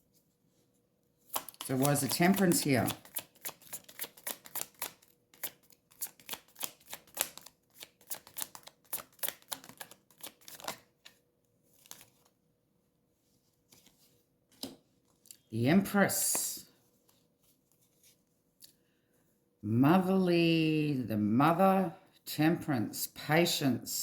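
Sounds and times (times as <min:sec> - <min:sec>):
cards shuffling: 0:01.3 - 0:12.4.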